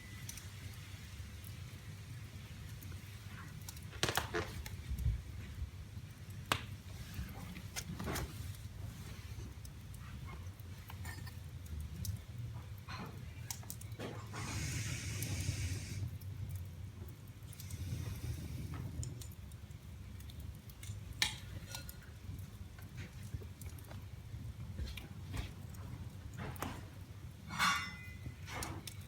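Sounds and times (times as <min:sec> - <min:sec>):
fire crackling and popping: 0:00.0 - 0:29.0
low rumble of flames: 0:00.0 - 0:29.0
fire hissing: 0:14.2 - 0:16.6, 0:17.4 - 0:19.3.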